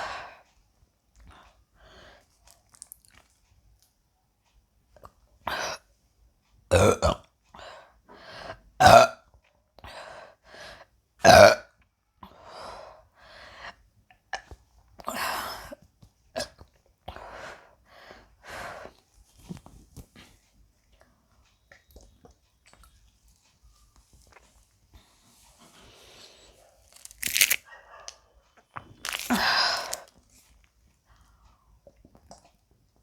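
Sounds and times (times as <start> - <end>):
woman burping: 6.7 - 7.2, 11.2 - 11.7, 29.0 - 30.0.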